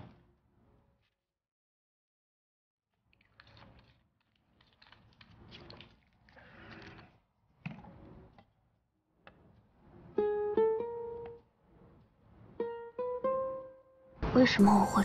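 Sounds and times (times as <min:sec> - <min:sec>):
soft plucked-string music: 0:10.0 - 0:11.5, 0:12.5 - 0:15.0.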